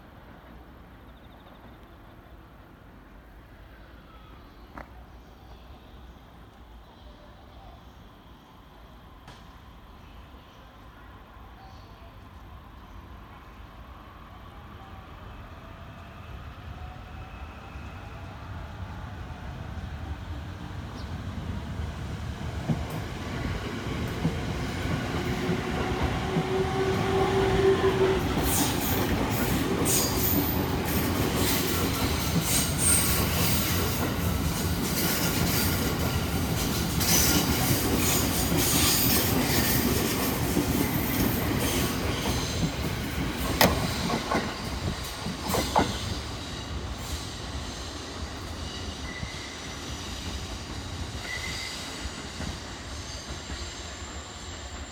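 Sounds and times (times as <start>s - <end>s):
train rumble: 13.8s - 53.6s
train wheels squealing on rails: 22.7s - 54.9s.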